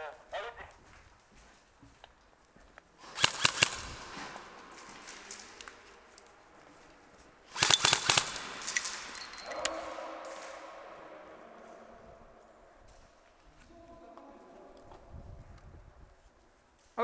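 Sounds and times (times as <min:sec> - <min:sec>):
airsoft rifle rapid shots: 0:03.0 - 0:04.4, 0:07.5 - 0:09.1.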